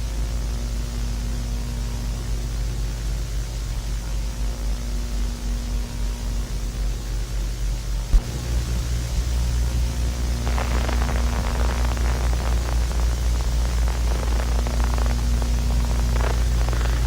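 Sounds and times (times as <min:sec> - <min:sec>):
low electrical hum: 0:00.0 - 0:17.0
static noise: 0:08.1 - 0:17.0
dense crackling: 0:08.2 - 0:17.0.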